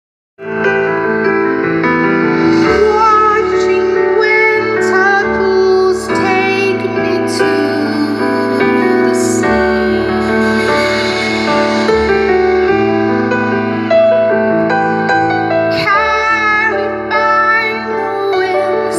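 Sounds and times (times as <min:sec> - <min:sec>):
woman singing with vibrato: 0:02.6 - 0:12.1, 0:15.7 - 0:18.9.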